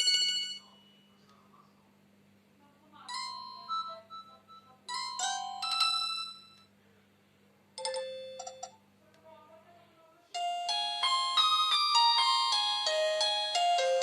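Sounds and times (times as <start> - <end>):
phone ringtone melody: 0.0 - 0.8, 3.1 - 6.6, 7.8 - 8.7, 10.4 - 14.0
phone alert chimes: 0.0 - 1.0, 3.2 - 6.7.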